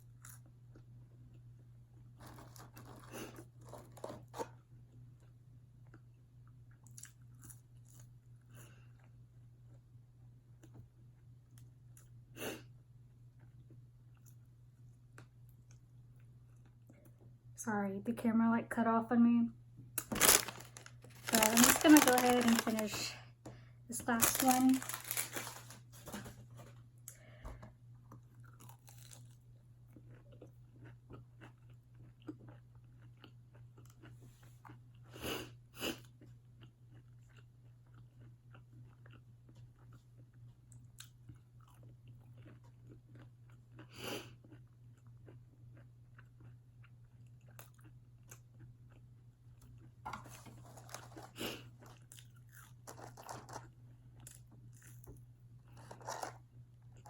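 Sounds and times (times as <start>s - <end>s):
soft chewing: 0.0s - 9.9s, 13.1s - 17.4s, 28.0s - 57.0s
crunching bites: 20.0s - 22.9s, 24.1s - 25.8s.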